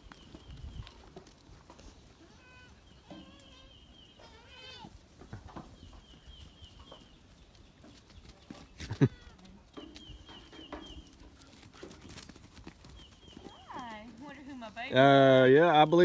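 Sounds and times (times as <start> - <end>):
goats bleating: 2.2 - 5.0.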